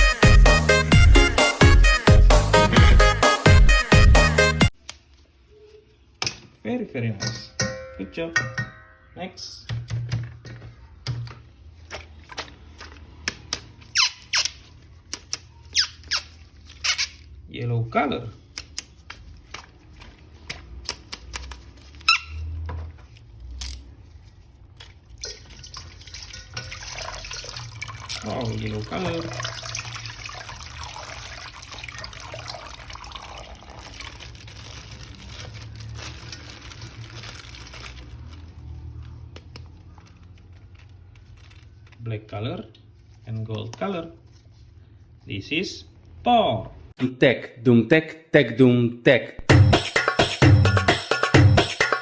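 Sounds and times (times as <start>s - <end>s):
tap water running: 25.2s - 34.1s.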